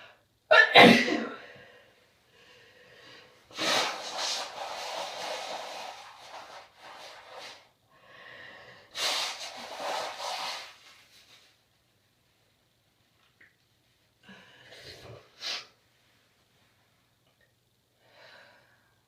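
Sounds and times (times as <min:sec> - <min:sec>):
person blowing nose: 0:03.5 - 0:07.7, 0:08.9 - 0:10.9.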